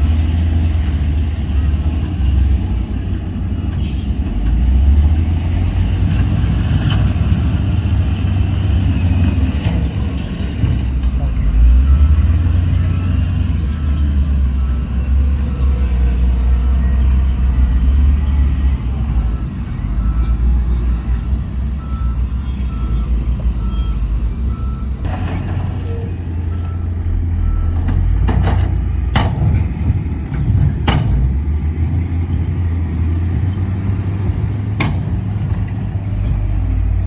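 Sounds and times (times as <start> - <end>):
heavy diesel machinery rumbling: 0.0 - 37.0
reversing alarm beeping: 11.4 - 25.1, 25.8 - 28.0.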